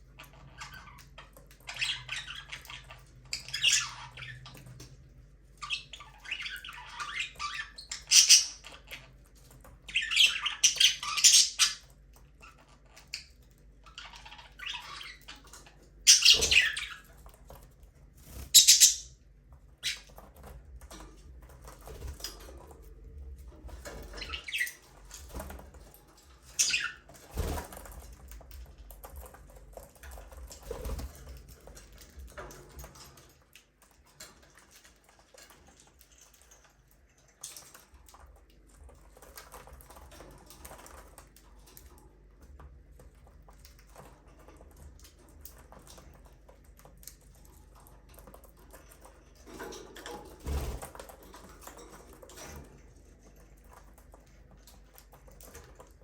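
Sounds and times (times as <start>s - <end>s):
budgerigar chirps: 18.6s - 19.1s
faint rustling and ticks: 19.2s - 56.0s.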